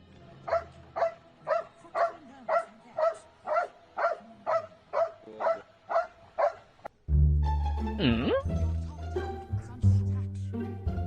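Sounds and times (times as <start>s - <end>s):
dog barking: 0.4s - 6.7s.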